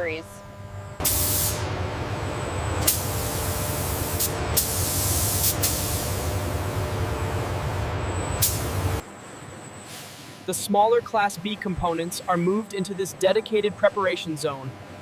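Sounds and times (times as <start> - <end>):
loud hissing: 1.0 - 1.7, 2.8 - 9.0.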